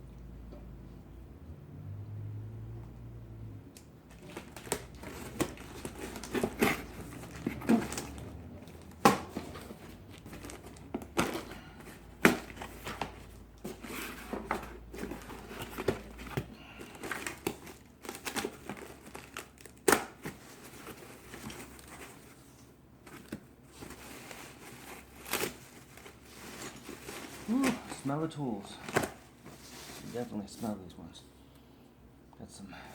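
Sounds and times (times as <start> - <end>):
packing material crinkling and tearing: 4.1 - 30.4.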